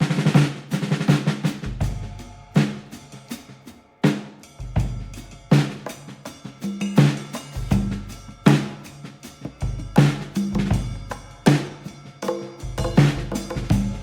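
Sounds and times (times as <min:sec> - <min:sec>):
music with drum beat: 0:00.0 - 0:14.0.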